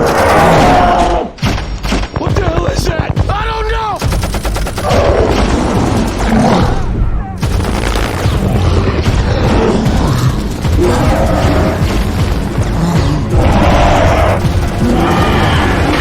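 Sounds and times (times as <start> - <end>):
booms and crashing impacts: 0.0 - 16.0.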